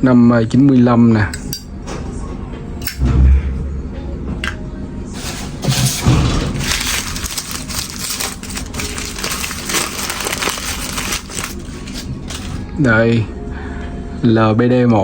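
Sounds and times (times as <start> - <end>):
wrapping crinkling and rustling: 5.2 - 12.7.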